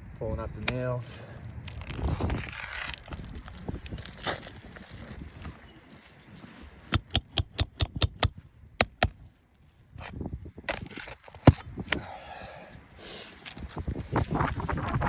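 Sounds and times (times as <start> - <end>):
sharp metal taps: 6.9 - 9.2.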